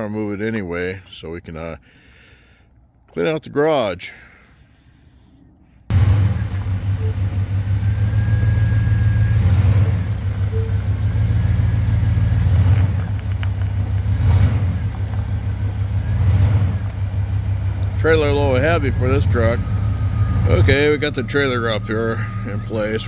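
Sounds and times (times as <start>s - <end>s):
truck engine running under load: 5.9s - 23.0s.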